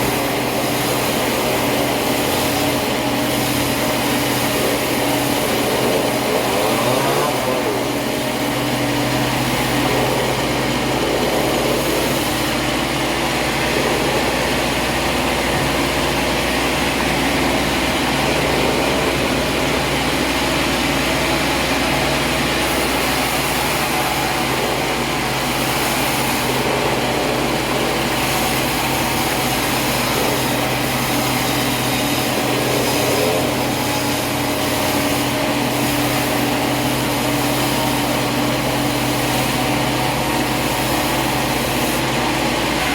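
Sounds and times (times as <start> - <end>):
motor droning: 0.0 - 42.9
saw running: 0.0 - 42.9.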